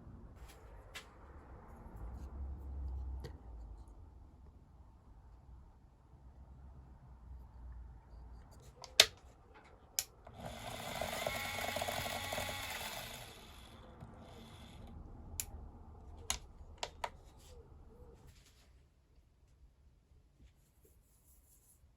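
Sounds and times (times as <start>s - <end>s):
small mechanism whirring: 10.0s - 15.5s.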